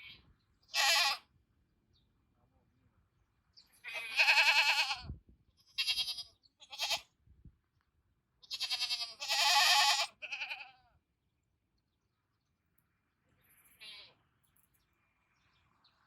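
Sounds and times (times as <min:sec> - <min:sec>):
goats bleating: 0:00.7 - 0:01.2, 0:03.8 - 0:05.1, 0:05.8 - 0:07.1, 0:08.5 - 0:10.9.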